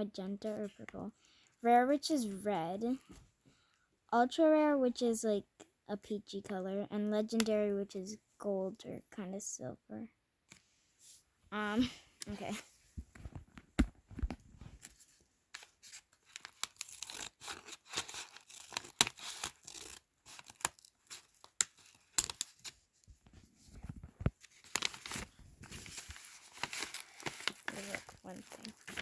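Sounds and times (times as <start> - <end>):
plastic packaging crinkling: 15.9 - 22.8, 24.4 - 29.0
bag tearing: 25.8 - 29.0.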